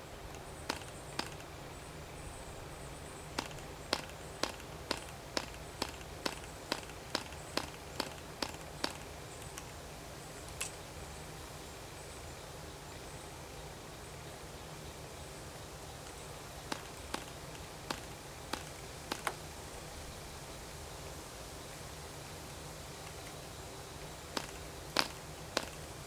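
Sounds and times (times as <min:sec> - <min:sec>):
propeller flicked by hand clicks: 0:00.1 - 0:10.9, 0:16.0 - 0:19.5, 0:24.2 - 0:26.0.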